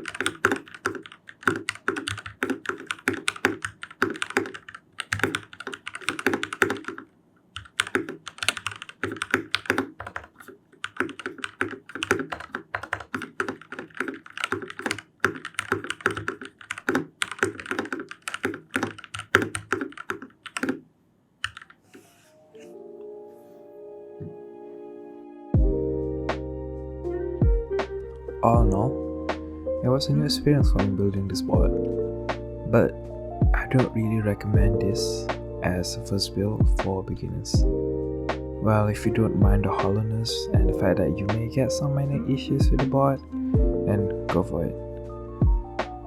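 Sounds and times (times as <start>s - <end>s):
mechanical keyboard typing: 0.0s - 20.8s, 21.4s - 22.0s
soft music: 22.0s - 46.0s.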